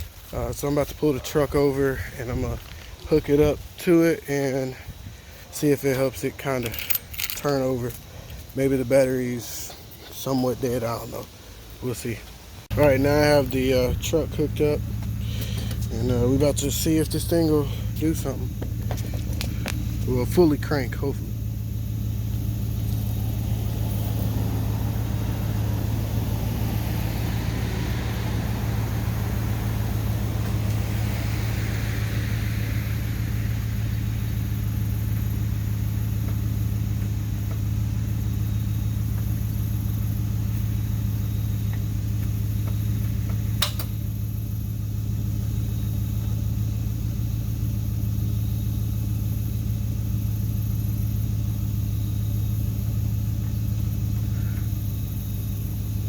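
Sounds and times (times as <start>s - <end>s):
truck engine idling: 0.0s - 56.0s
sharp click: 43.6s - 44.0s.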